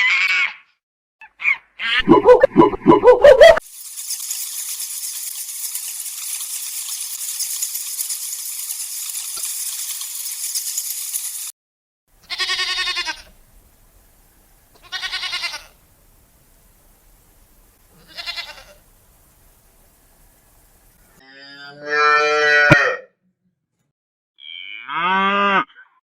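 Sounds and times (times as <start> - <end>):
high rattling hiss: 3.6 - 11.5, 12.3 - 21.2
animal bleating: 12.2 - 13.3, 14.8 - 15.8, 17.9 - 18.8.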